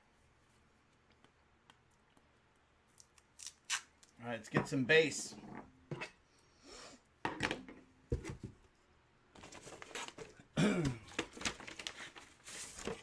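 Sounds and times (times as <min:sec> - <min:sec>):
packaging rustling: 0:09.4 - 0:10.4, 0:11.0 - 0:13.0.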